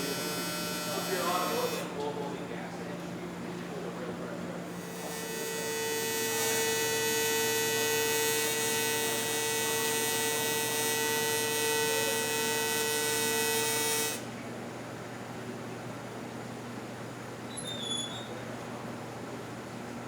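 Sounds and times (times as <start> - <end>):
welding arc buzzing: 0.0 - 1.9, 4.8 - 14.2.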